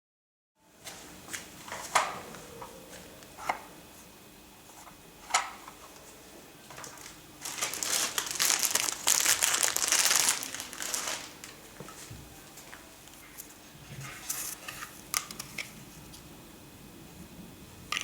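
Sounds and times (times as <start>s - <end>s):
packaging crinkling: 6.7s - 12.1s.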